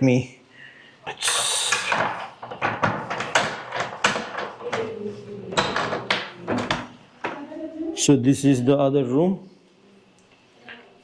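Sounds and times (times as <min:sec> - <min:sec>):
door clicks and knocks: 0:01.2 - 0:07.5.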